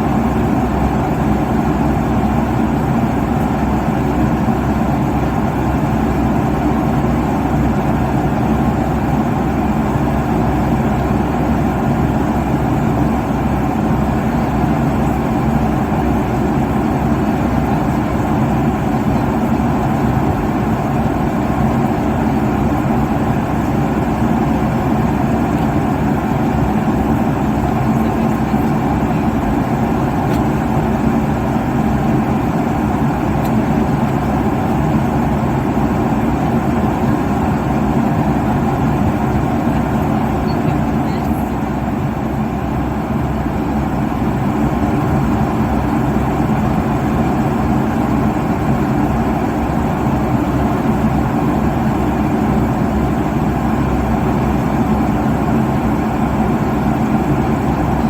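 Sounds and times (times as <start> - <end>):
airliner cabin engine noise: 0.0 - 58.0.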